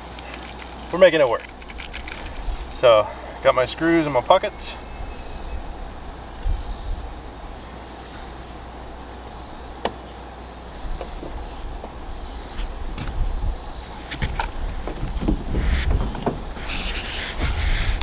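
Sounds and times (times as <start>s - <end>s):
high-pitched insect chorus: 0.0s - 18.0s
low microphone rumbles: 1.6s - 9.5s, 10.7s - 18.0s.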